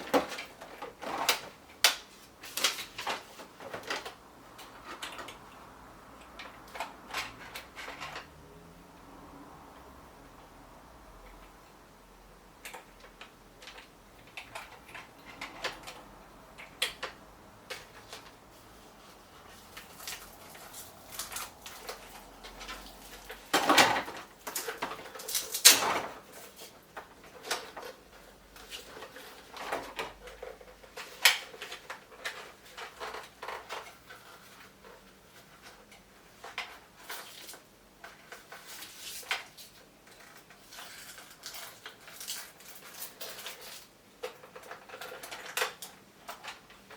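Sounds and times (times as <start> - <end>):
plastic parts clicking and knocking: 0.0 - 5.6, 6.2 - 8.4, 12.6 - 18.4, 19.2 - 46.9
rustling scrapes: 17.7 - 45.6.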